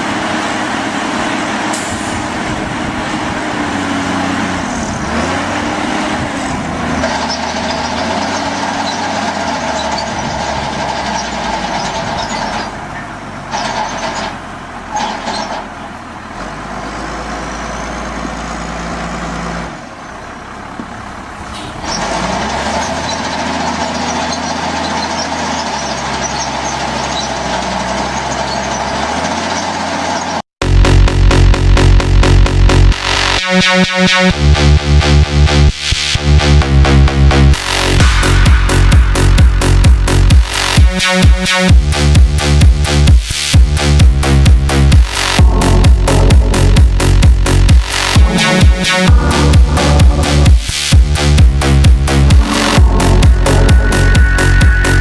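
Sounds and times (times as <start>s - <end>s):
heavy machinery engines under load: 0.0s - 33.3s.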